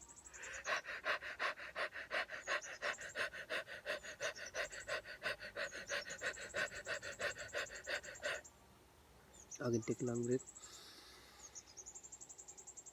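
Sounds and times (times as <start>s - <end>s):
rapid panting breaths: 0.0s - 8.4s.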